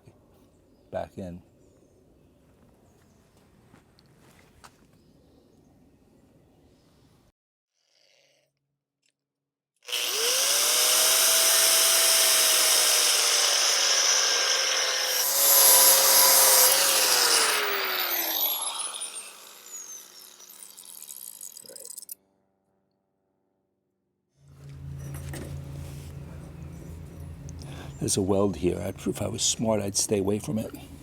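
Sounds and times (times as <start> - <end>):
angle grinder whining: 9.8 - 22.2.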